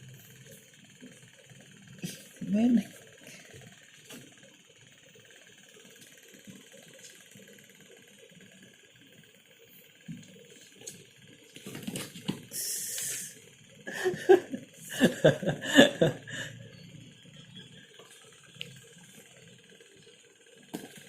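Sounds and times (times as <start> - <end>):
person laughing: 13.9 - 16.6.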